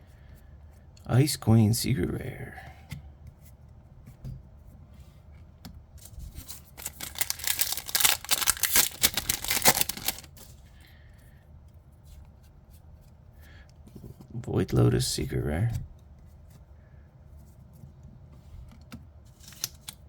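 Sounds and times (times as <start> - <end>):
handling of cards: 6.0 - 10.6, 18.7 - 20.0
wrapper crinkling and tearing: 6.0 - 10.6, 19.3 - 20.0.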